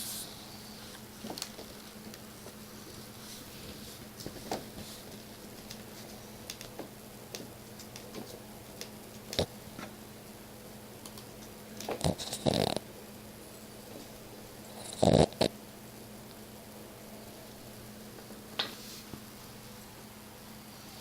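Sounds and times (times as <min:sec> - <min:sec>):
steady low hum: 0:00.0 - 0:21.0
cat snoring: 0:12.0 - 0:12.8, 0:14.7 - 0:15.5.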